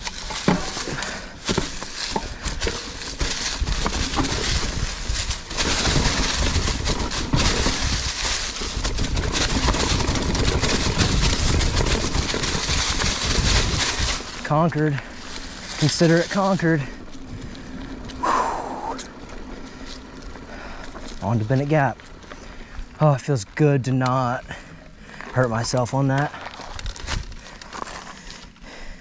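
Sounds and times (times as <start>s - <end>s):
bike clattering and knocking: 0.0s - 18.2s
bike tyres on dirt and rock: 0.0s - 29.0s
wind rumble on microphone: 3.5s - 14.3s.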